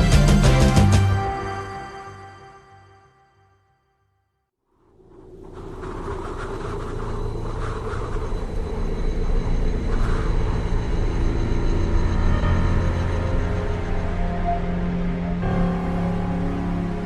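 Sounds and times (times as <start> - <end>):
held drone tones: 4.8 - 17.0
low rumble: 4.8 - 17.0.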